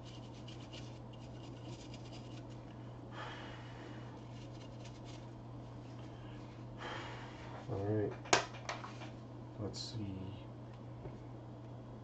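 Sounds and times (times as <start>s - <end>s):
scratchy scrubbing on circuit board: 0.0s - 2.6s, 4.3s - 5.3s
steady low hum: 0.0s - 12.0s.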